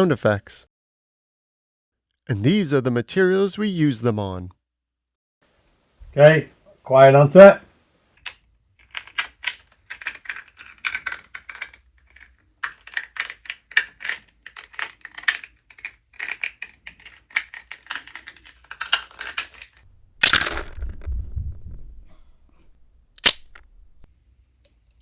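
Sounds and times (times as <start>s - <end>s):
material crackling and crunching: 19.8s - 24.1s
loud crack with thump: 20.1s - 24.1s.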